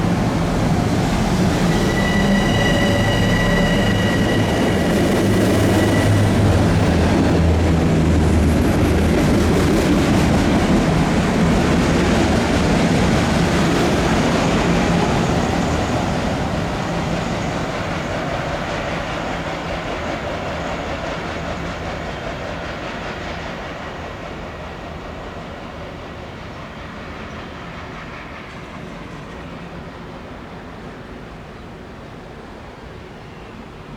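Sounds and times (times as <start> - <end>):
high whine: 0.0 - 9.1
train rumbling on rails: 0.0 - 33.9.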